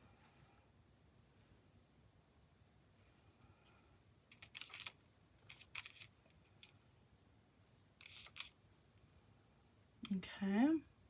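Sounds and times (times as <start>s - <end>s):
scratchy handling noises: 3.0s - 6.8s, 8.0s - 8.6s.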